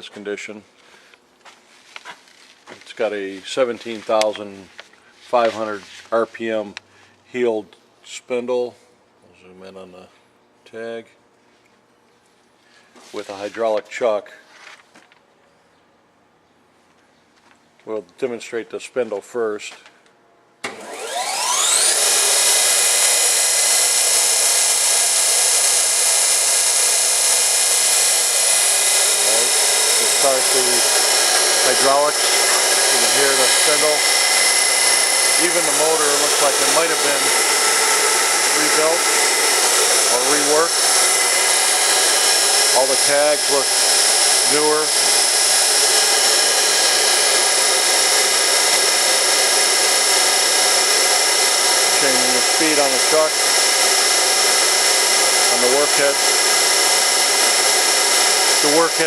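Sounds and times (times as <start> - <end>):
grinding spindle whine: 20.7 - 59.0.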